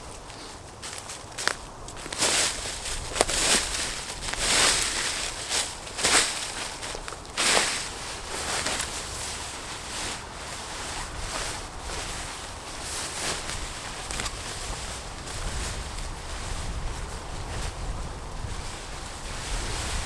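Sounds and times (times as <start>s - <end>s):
rustling: 0.0s - 20.0s
wind buffeting microphone: 0.0s - 20.0s
gusty storm wind: 1.4s - 20.0s.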